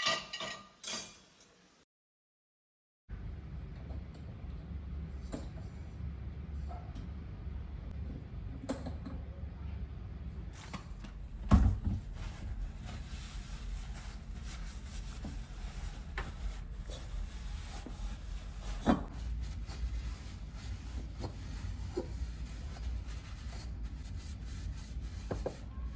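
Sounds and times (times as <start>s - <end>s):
steady low hum: 9.3s - 25.9s.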